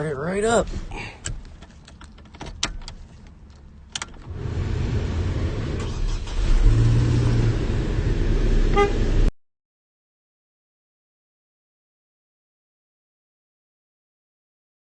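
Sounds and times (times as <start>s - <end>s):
truck engine starting and running: 0.0s - 9.3s.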